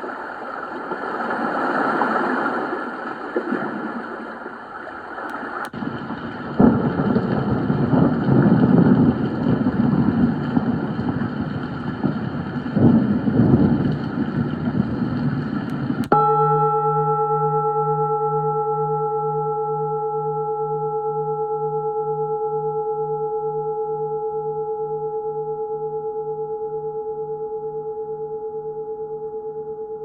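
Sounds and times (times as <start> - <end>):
click: 15.7 - 16.2
steady ringing tone: 16.1 - 30.0.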